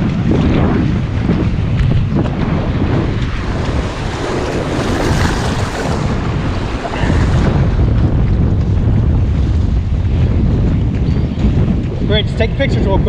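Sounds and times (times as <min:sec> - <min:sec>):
wind buffeting microphone: 0:00.0 - 0:13.0
ocean surf breaking: 0:01.1 - 0:08.9.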